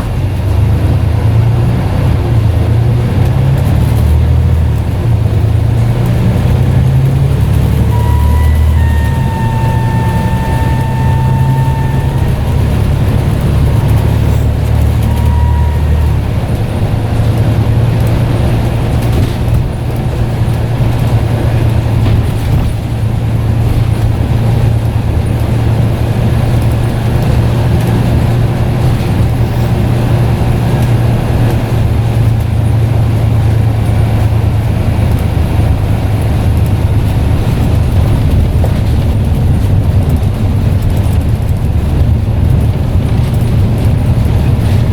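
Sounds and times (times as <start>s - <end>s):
bus engine droning: 0.0s - 44.9s
turbo whistle: 7.4s - 16.3s.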